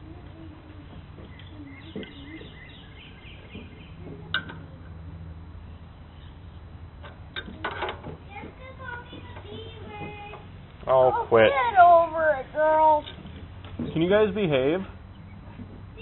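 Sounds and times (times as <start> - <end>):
small birds chirping: 0.2 - 4.9, 5.6 - 6.7, 12.2 - 16.0.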